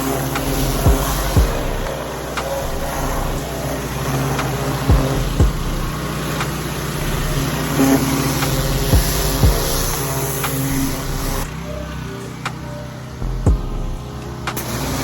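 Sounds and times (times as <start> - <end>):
high-pressure spray hissing: 0.0 - 15.0
pressure washer engine running: 0.0 - 15.0
short low thumps: 0.9 - 1.9, 4.9 - 6.0, 8.9 - 10.0, 13.4 - 14.0.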